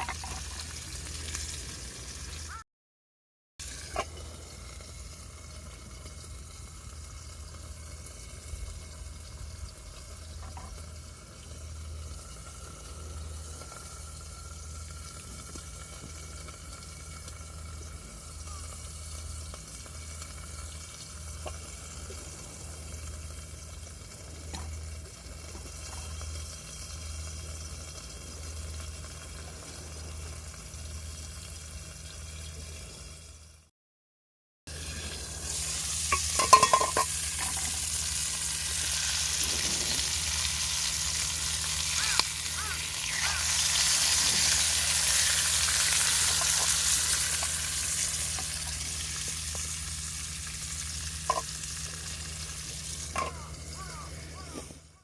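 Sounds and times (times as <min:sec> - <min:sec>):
food sizzling in a frying pan: 0:00.0 - 0:02.6, 0:03.6 - 0:33.6, 0:34.7 - 0:54.7
faint crackles: 0:37.4 - 0:49.8.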